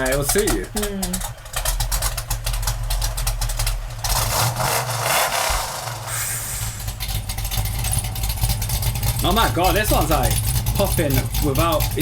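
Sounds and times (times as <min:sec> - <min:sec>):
car engine idling: 0:00.0 - 0:12.0
rush of noise: 0:05.3 - 0:07.0.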